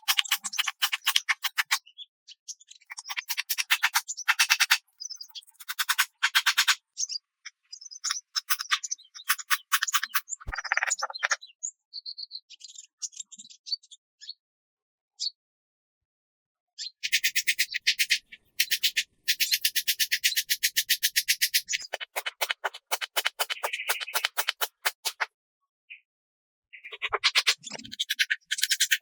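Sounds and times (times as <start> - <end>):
short high animal chirps: 8.2 - 11.4.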